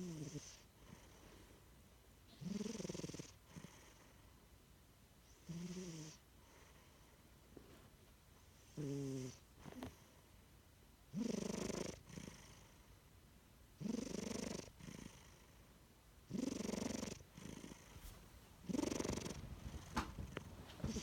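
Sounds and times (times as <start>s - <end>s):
cat snoring: 0.0s - 1.4s, 2.3s - 4.2s, 5.3s - 7.1s, 8.6s - 10.2s, 11.1s - 12.8s, 13.8s - 15.6s, 16.3s - 17.9s, 18.6s - 21.0s.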